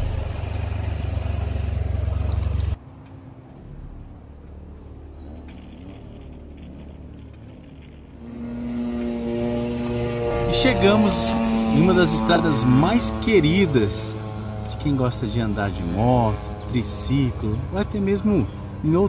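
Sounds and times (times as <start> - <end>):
motorcycle engine rumbling: 0.0 - 19.0.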